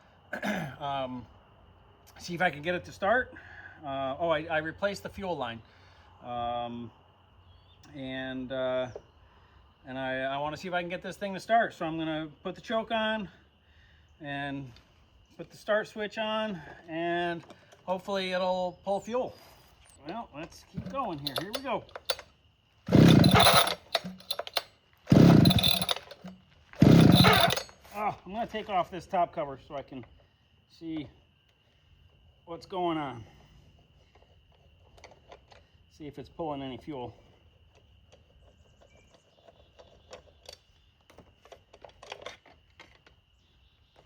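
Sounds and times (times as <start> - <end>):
chainsaw pull-start chuffing: 20.8 - 28.1.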